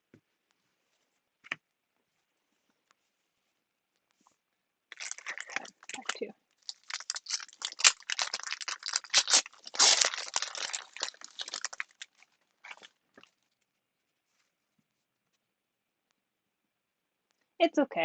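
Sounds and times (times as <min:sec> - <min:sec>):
packaging crinkling: 0:04.9 - 0:13.4.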